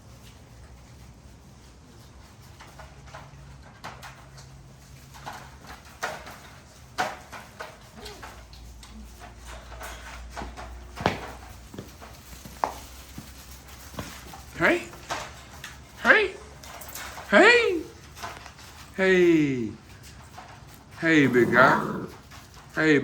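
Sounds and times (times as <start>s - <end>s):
paws tapping on floor: 2.4s - 16.0s.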